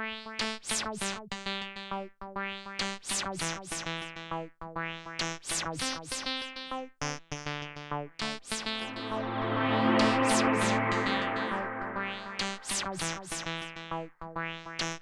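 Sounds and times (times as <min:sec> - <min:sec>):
electronic synthesizer music: 0:08.7 - 0:13.2.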